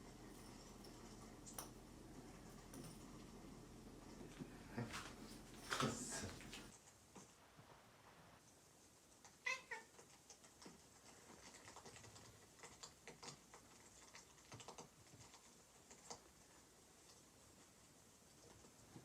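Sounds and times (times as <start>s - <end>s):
faint clicks and taps: 0.2s - 1.9s
cat meowing: 9.4s - 9.9s.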